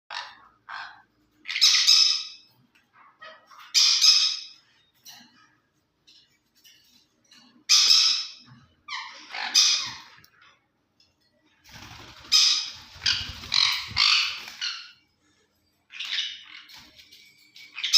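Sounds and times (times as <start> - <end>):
parakeet squawking: 0.1 - 4.6, 7.7 - 10.2, 11.8 - 15.0, 15.9 - 16.8.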